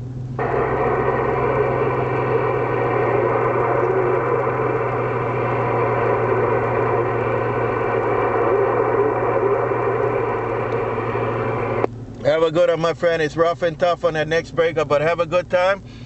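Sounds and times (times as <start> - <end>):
droning tones: 0.0 - 12.2
constant hum: 0.0 - 16.0
radio static hiss: 0.4 - 15.9.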